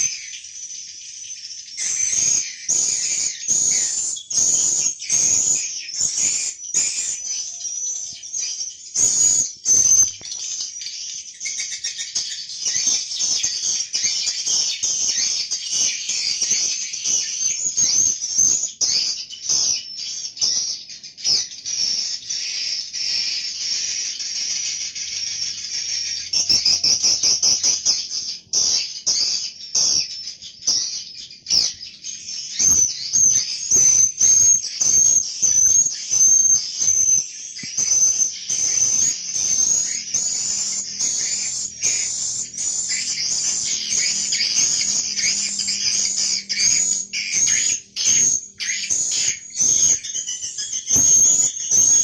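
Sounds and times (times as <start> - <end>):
swiftlets twittering: 32.5 - 52.0.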